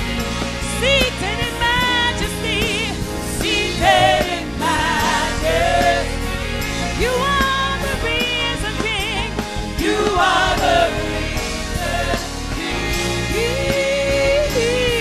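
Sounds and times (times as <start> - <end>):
instrumental accompaniment with bass: 0.0 - 15.0
singer with vibrato: 7.0 - 15.0.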